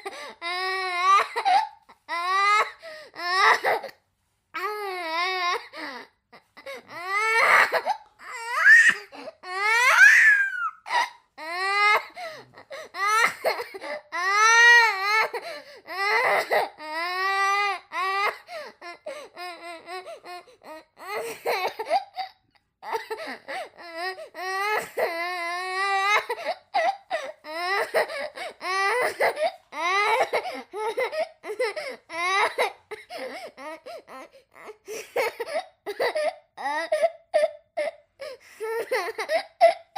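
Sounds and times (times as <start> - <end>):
young child crying: 6.8 - 13.8.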